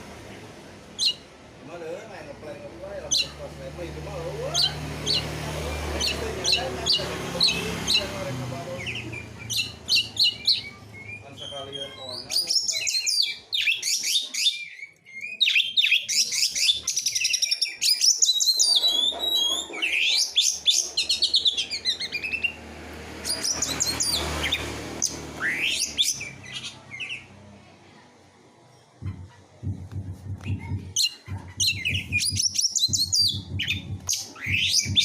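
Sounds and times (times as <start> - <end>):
songbird chirps and trills: 4.5 - 27.4, 28.6 - 35.0
low hum: 29.0 - 35.0.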